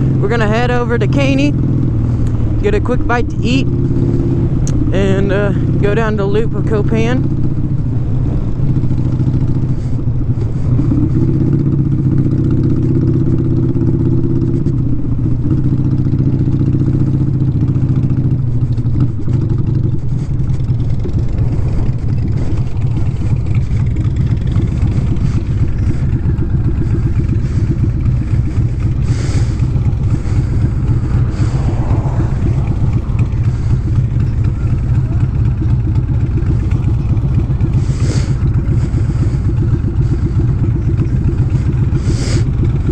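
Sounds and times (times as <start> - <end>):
motorcycle engine running: 0.0 - 42.9
wind rumbling on microphone: 18.3 - 41.0.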